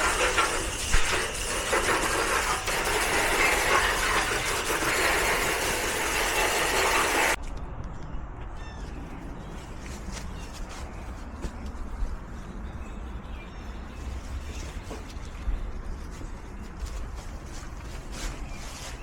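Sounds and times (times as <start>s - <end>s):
garden hose water spray: 0.0s - 7.4s.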